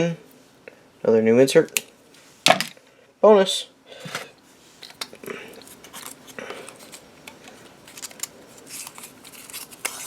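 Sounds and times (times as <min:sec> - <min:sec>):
paper packaging rustling: 0:04.8 - 0:10.0.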